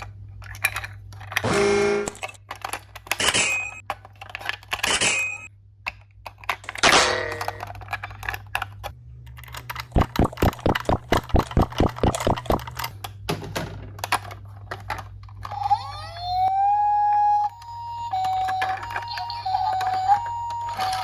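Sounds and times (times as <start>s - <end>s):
toys and plastic packaging handled: 0.0s - 1.4s, 2.1s - 3.2s, 3.8s - 4.9s, 7.6s - 9.9s, 14.0s - 15.9s, 18.0s - 21.0s
sharp even clicks: 10.0s - 12.8s
toy electronic siren rising: 16.3s - 21.0s.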